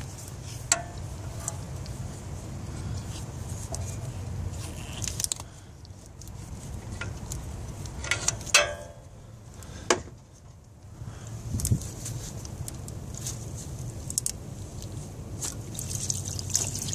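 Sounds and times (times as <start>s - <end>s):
low steady rumble: 0.0s - 16.9s
metal tools clicking and clinking: 8.0s - 9.0s.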